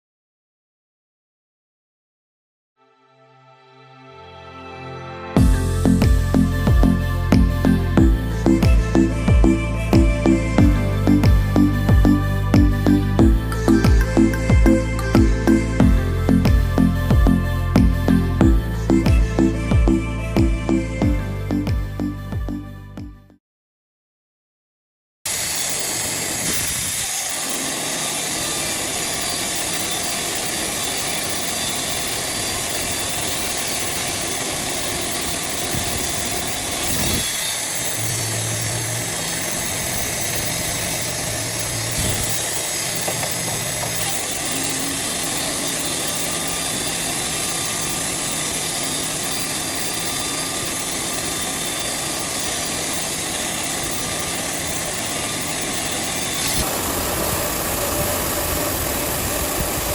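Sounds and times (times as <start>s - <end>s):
band sawmill sawing a log: 25.3s - 59.9s.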